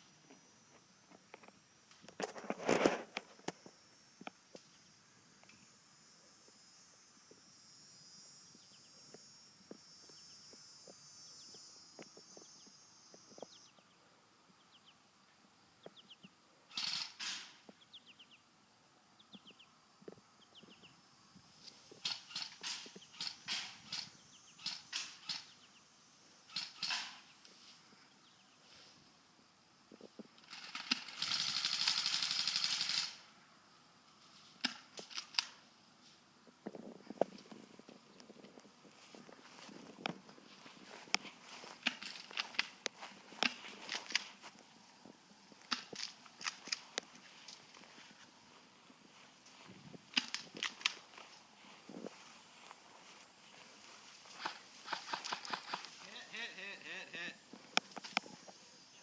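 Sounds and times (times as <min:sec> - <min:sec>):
high insect buzz: 0:00.0 - 0:36.3, 0:36.9 - 0:59.0
small birds chirping: 0:07.9 - 0:15.1, 0:15.7 - 0:18.5, 0:19.1 - 0:29.0, 0:37.0 - 0:59.0
sharp clicks: 0:16.7 - 0:17.7, 0:21.7 - 0:25.6, 0:26.5 - 0:27.3, 0:30.4 - 0:33.2, 0:34.6 - 0:35.6, 0:41.8 - 0:44.4, 0:45.6 - 0:47.8, 0:50.1 - 0:51.2, 0:54.3 - 0:56.1
airsoft gun full-auto burst: 0:30.5 - 0:33.3, 0:54.4 - 0:56.0.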